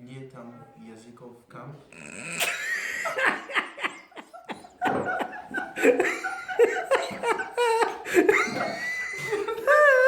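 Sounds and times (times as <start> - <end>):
people laughing: 2.5 - 10.0.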